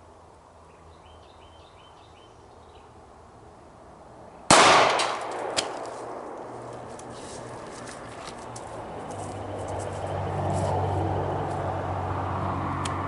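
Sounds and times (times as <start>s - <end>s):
gunshot with echo: 4.5s - 6.3s.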